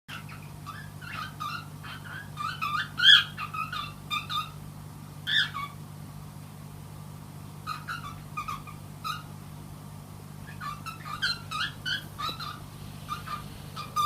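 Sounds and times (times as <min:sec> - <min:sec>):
steady low hum: 0:00.1 - 0:14.0
cat chirping and trilling: 0:07.7 - 0:09.3, 0:10.4 - 0:14.0.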